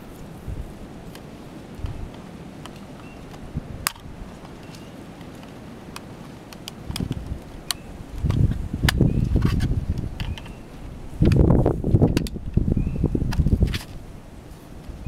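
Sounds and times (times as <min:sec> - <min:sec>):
sharp plastic clicks: 0:01.1 - 0:10.6, 0:11.2 - 0:12.6, 0:13.3 - 0:14.0.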